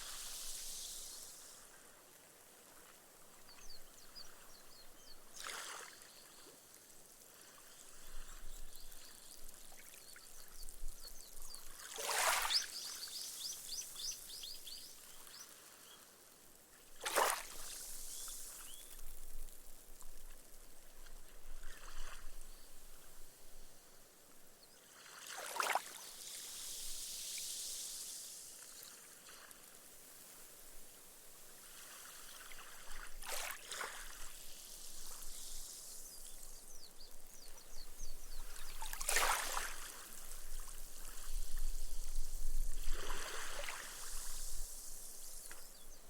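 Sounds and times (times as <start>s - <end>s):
foam fizzing into sand: 0.0s - 1.6s, 25.2s - 30.0s, 38.2s - 45.9s
small waves breaking on sand: 0.0s - 10.0s, 11.6s - 16.2s, 16.8s - 19.0s, 24.8s - 37.1s, 38.2s - 42.0s, 42.6s - 45.8s.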